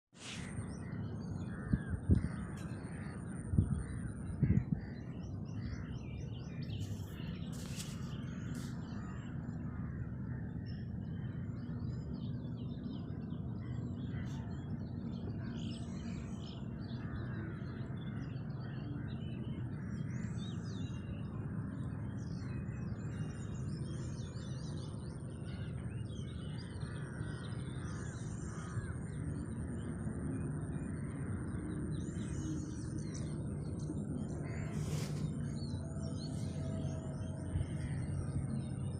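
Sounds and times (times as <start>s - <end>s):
steady low rumble: 0.2s - 38.9s
birds calling: 22.1s - 38.9s.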